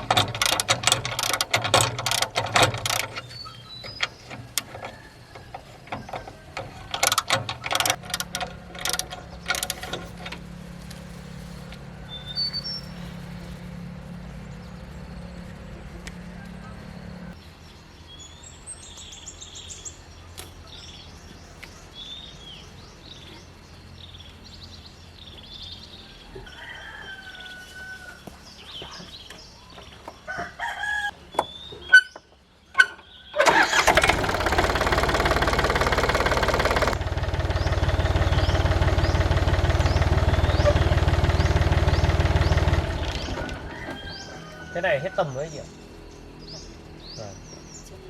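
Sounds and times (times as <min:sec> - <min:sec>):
tractor engine running: 0:00.0 - 0:17.4, 0:33.4 - 0:44.6
birds chirping: 0:00.0 - 0:48.0.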